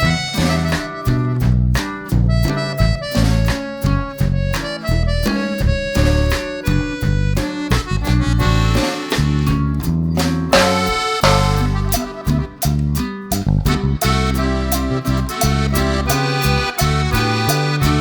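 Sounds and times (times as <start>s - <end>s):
instrumental background music: 0.0s - 18.0s.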